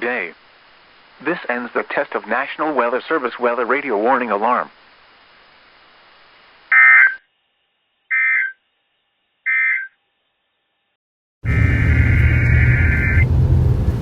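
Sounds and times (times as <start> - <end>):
digital data tone bursts: 11.5 - 13.2.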